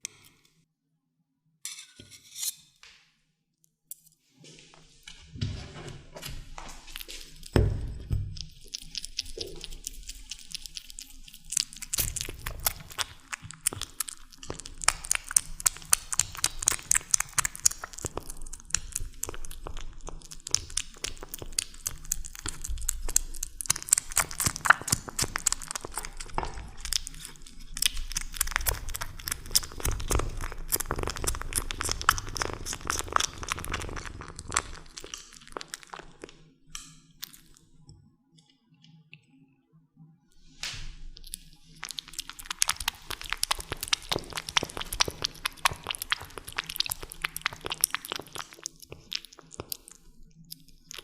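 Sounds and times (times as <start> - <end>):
kittens eating: 6.7 - 37.8, 40.4 - 51.0
wet smacking and chewing clicks: 6.9 - 37.7, 41.2 - 51.0.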